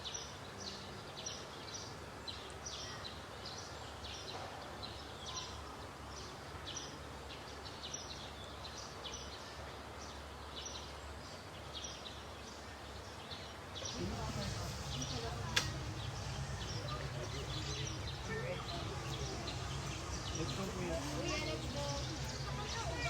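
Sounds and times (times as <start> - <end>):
steady low rumble: 13.9 - 23.0.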